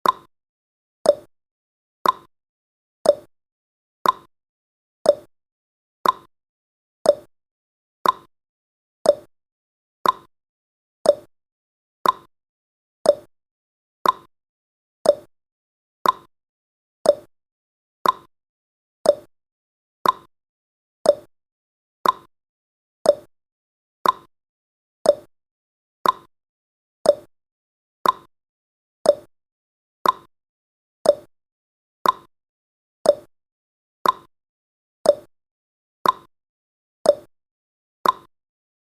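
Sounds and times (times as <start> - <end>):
timer ticking: 0.0 - 0.3, 1.1 - 1.3, 2.0 - 2.3, 3.0 - 3.3, 4.0 - 4.3, 5.0 - 5.3, 6.0 - 6.3, 7.0 - 7.3, 8.0 - 8.3, 9.0 - 9.3, 10.0 - 10.3, 11.0 - 11.3, 12.0 - 12.3, 13.0 - 13.3, 14.0 - 14.3, 15.0 - 15.3, 16.0 - 16.3, 17.0 - 17.3, 18.0 - 18.3, 19.0 - 19.3, 20.0 - 20.3, 21.0 - 21.3, 22.0 - 22.3, 23.0 - 23.3, 24.0 - 24.3, 25.0 - 25.3, 26.0 - 26.3, 27.0 - 27.3, 28.0 - 28.3, 29.0 - 29.3, 30.0 - 30.3, 31.0 - 31.3, 32.0 - 32.3, 33.0 - 33.3, 34.0 - 34.3, 35.0 - 35.3, 36.0 - 36.3, 37.1 - 37.3, 38.0 - 38.3.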